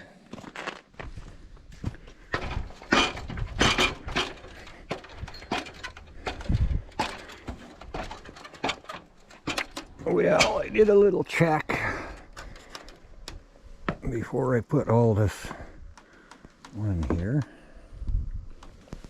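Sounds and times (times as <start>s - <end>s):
objects knocking and clunking: 1.8s - 10.9s.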